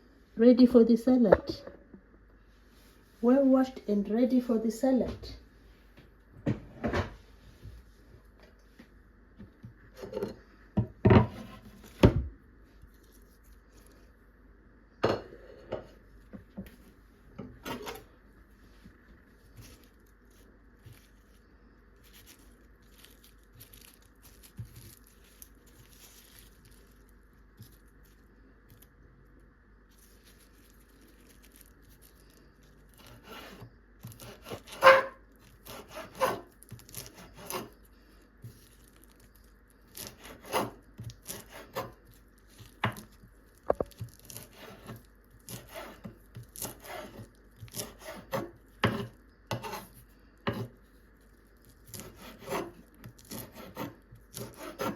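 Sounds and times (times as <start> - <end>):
faint handling sounds: 7.1 - 14.5, 15.6 - 34.2, 36.5 - 40.2
knife chopping on wooden board: 43.7 - 49.9, 50.5 - 50.7, 51.9 - 54.9.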